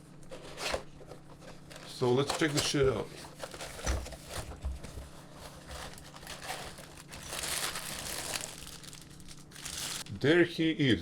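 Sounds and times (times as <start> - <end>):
packaging crinkling: 5.3 - 10.1.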